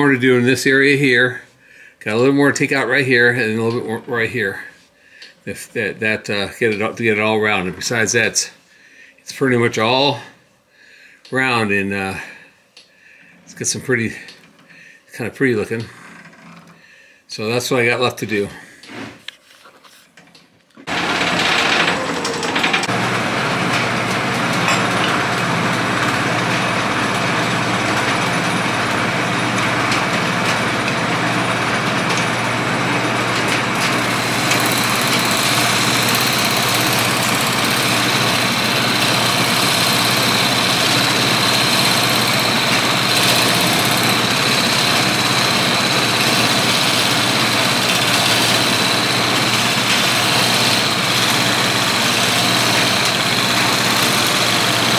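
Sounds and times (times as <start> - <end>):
turning tool cutting wood: 20.8 - 54.9
wood lathe motor hum: 20.8 - 54.9.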